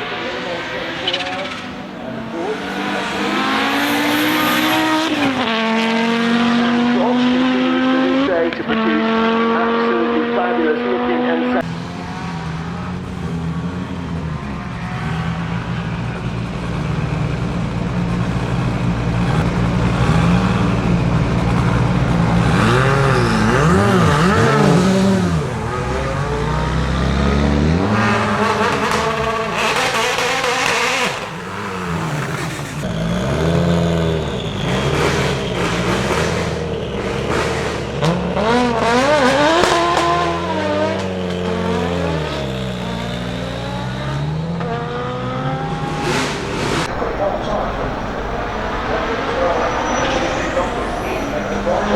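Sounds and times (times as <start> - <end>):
car engine revving: 0.0 - 51.9
sharp engine crackles: 11.6 - 51.9.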